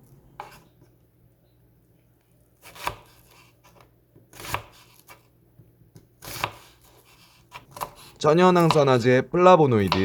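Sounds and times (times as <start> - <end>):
knife chopping on cutting board: 0.4 - 0.6, 2.6 - 5.3, 6.0 - 9.0, 9.8 - 10.0.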